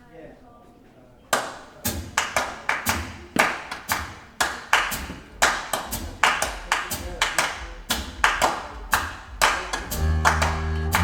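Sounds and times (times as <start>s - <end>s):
rhythmic hand claps: 1.3s - 11.0s
low bass line: 9.9s - 11.0s.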